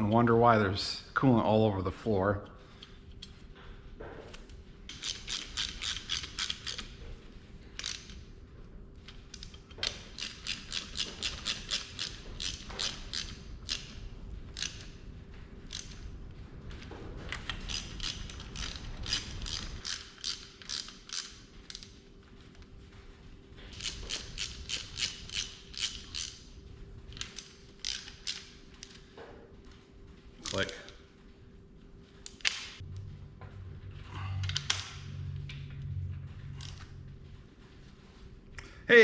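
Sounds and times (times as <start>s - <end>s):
ratchet wrench clicking: 4.9s - 6.9s, 7.8s - 8.2s, 9.4s - 14.9s, 15.7s - 16.0s, 17.4s - 21.9s, 23.8s - 26.4s, 27.2s - 29.0s.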